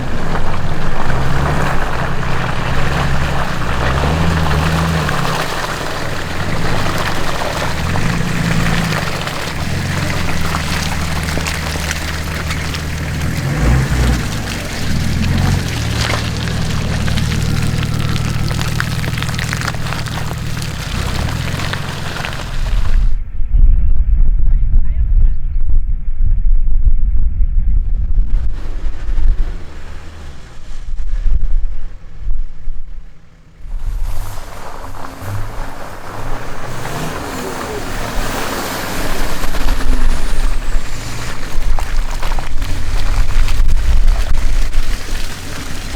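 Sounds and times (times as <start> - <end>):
tyres crackling on stones: 0.0 - 23.2, 33.5 - 45.9
engine running at low revs: 0.0 - 45.9
broad rushing noise: 33.6 - 42.2.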